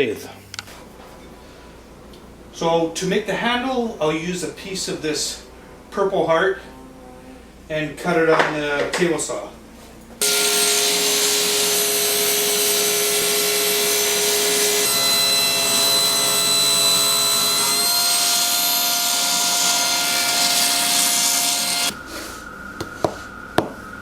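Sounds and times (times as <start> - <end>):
table saw cutting wood: 10.2 - 22.0.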